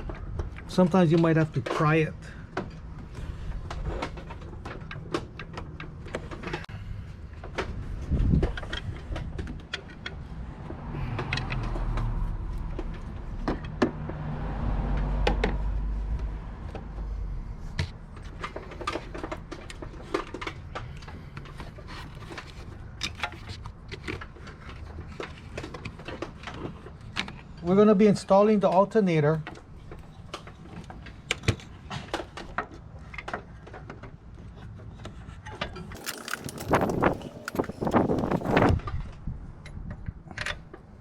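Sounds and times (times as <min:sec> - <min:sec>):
metal clicks and knocks: 0:35.0 - 0:38.8.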